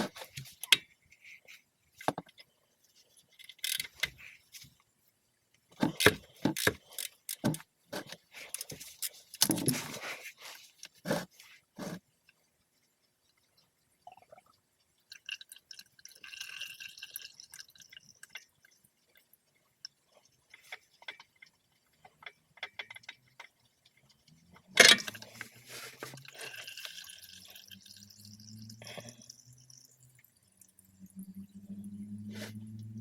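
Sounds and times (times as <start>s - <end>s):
oil trickling and dripping: 0.1s - 33.0s
small clicks: 3.4s - 4.4s, 5.9s - 7.6s.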